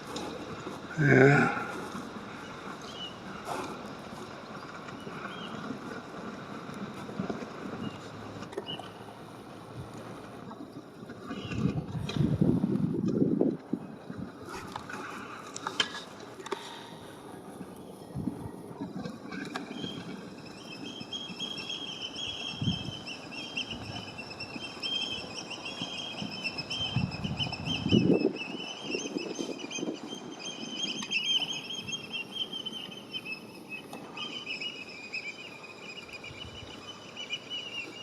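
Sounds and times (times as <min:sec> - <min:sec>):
wind buffeting microphone: 0:09.2 - 0:15.4, 0:16.9 - 0:34.6, 0:35.9 - 0:38.0
bird twittering: 0:19.4 - 0:38.0.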